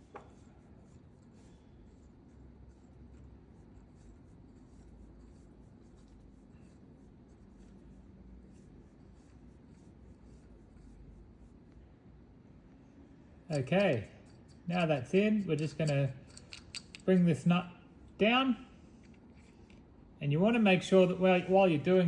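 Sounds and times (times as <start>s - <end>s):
low steady hum: 0.0s - 22.0s
threaded rod scratching and ticking: 13.5s - 17.4s.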